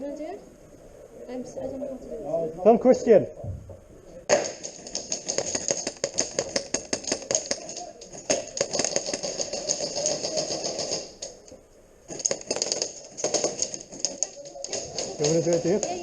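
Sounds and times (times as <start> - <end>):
airsoft guns firing: 4.3 - 11.4, 12.1 - 16.0.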